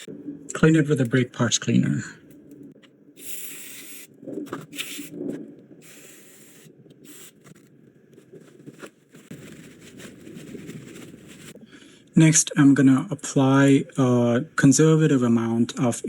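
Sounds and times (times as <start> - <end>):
aerosol spray hissing: 3.2 - 5.2, 5.8 - 7.6
rubbing and scraping: 3.2 - 11.7.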